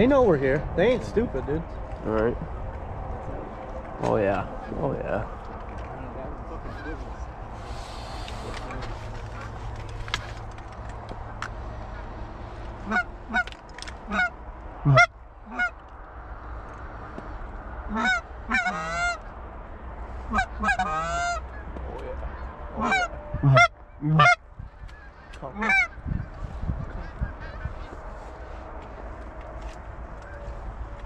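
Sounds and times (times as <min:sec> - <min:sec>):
low wind rumble: 0:00.0 - 0:31.0
goose honking: 0:06.5 - 0:08.5, 0:12.8 - 0:15.9, 0:17.9 - 0:19.4, 0:20.2 - 0:28.4.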